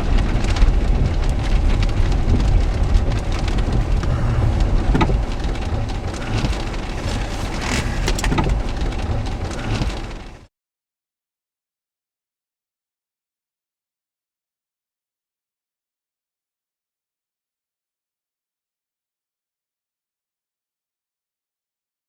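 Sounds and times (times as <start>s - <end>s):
rain beating on a car: 0.0s - 10.5s
vehicle low rumble: 0.0s - 10.5s.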